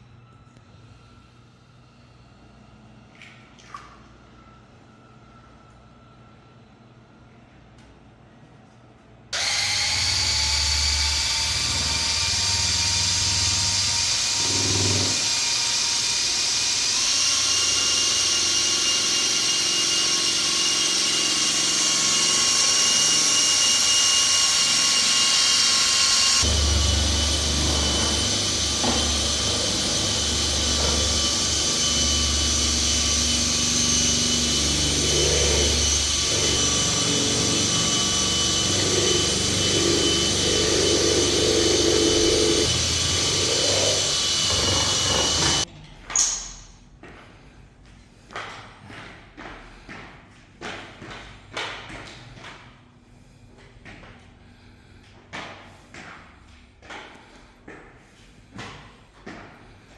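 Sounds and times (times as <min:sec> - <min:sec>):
power tool motor whining: 0:09.4 - 0:45.7.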